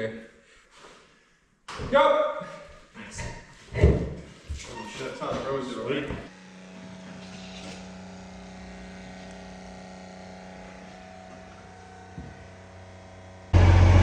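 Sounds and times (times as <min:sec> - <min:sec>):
engine idling hum: 0:07.8 - 0:14.0.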